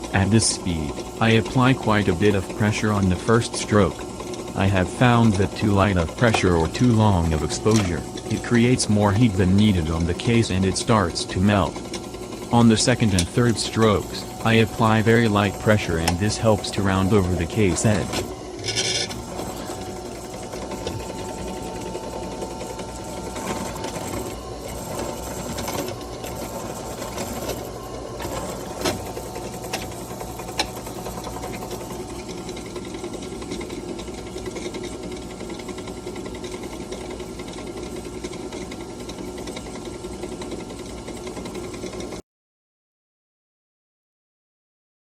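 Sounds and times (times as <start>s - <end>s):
drill press running: 0.0s - 42.2s.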